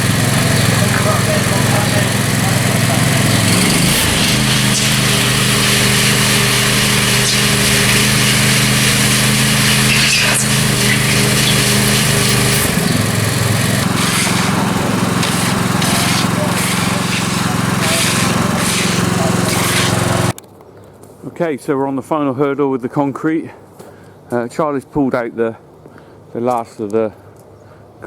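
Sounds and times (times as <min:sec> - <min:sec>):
machine engine running: 0:00.0 - 0:20.4.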